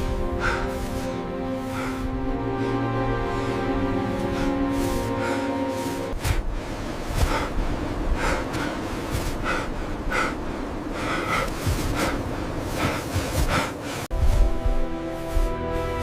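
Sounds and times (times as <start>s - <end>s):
music: 0.0s - 6.5s, 12.8s - 16.0s
person breathing hard: 0.0s - 14.5s
steady low rumble: 0.0s - 16.0s.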